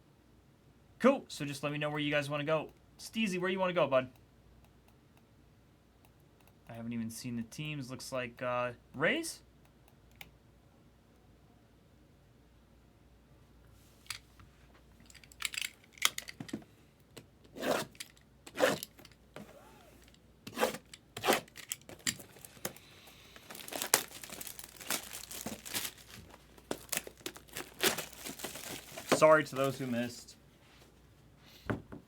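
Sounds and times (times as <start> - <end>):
packaging tearing and crinkling: 20.6 - 30.1.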